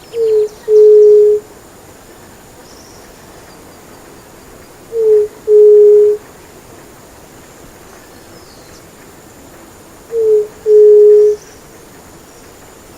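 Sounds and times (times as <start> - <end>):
bird two-note hoot: 0.0 - 1.5, 4.9 - 6.2, 10.1 - 11.5.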